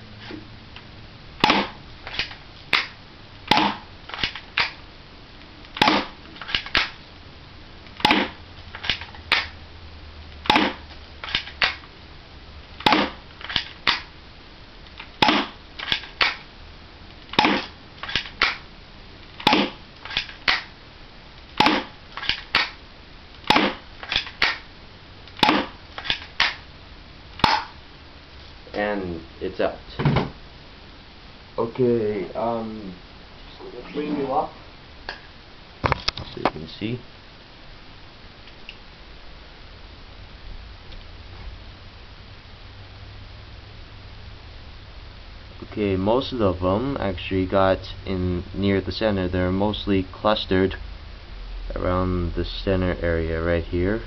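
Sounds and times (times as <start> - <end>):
airsoft pistol plastic clacks: 3.5 - 4.8, 8.0 - 9.5, 10.5 - 11.8, 12.9 - 14.1, 14.9 - 16.4, 17.3 - 18.6, 19.4 - 20.7, 21.6 - 22.8, 23.5 - 24.6, 25.4 - 26.6.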